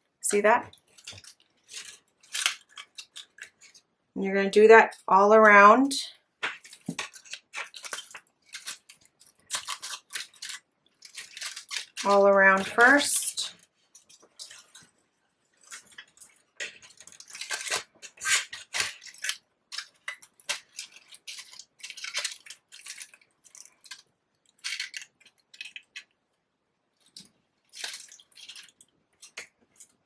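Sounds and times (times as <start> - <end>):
paper flowers rustling: 6.4 - 24.0.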